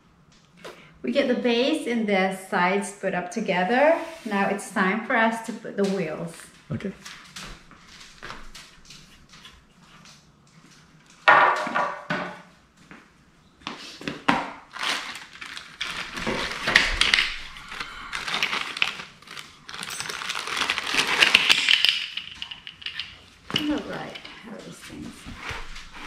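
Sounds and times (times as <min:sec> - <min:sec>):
rustling and crinkling: 0:05.8 - 0:11.3, 0:12.5 - 0:26.0
small parts clicking and clattering: 0:15.0 - 0:24.5.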